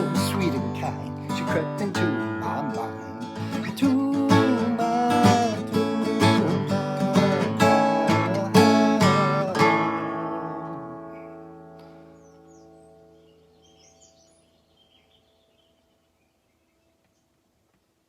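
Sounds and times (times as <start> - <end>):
acoustic guitar strumming: 0.0 - 14.4
sliding guitar melody: 0.0 - 14.4.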